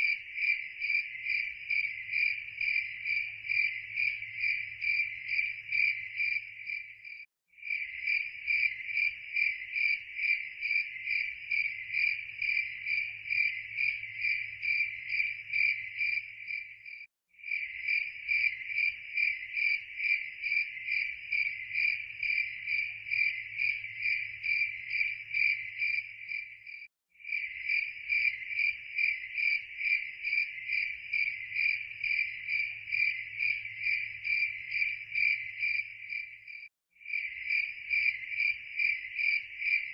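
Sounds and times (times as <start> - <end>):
crickets chirping: 0.0 - 39.9.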